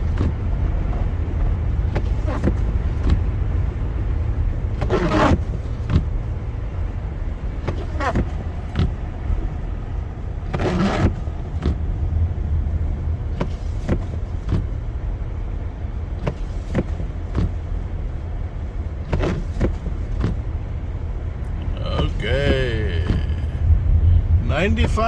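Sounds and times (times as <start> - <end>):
engine and tyre rumble: 0.0 - 25.0.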